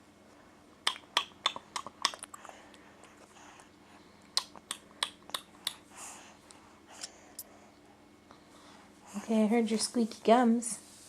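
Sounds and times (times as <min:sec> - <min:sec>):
baby making clicking mouth noises: 0:00.8 - 0:02.4, 0:04.3 - 0:05.8.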